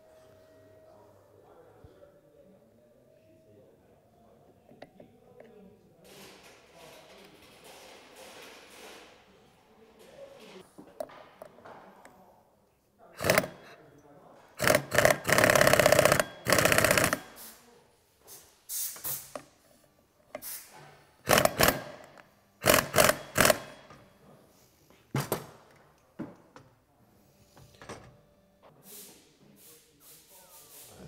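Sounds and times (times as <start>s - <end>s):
power tool rattling: 13.2s - 13.7s, 14.6s - 17.4s, 21.3s - 24.0s.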